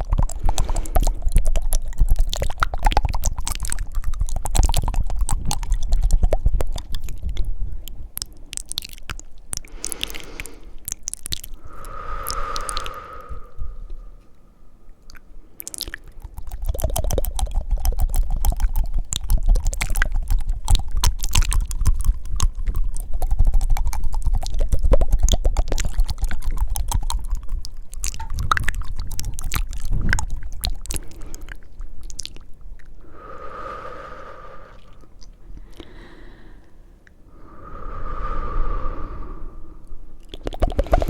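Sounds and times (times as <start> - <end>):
wet mouth clicks: 0.0 - 41.0
breaths: 0.2 - 1.4, 9.6 - 16.3, 31.0 - 31.8, 33.0 - 41.0.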